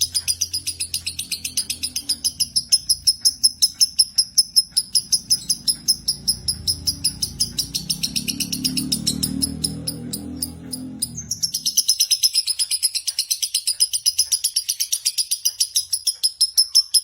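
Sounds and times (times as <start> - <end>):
bird chirping rapidly: 0.0 - 17.0.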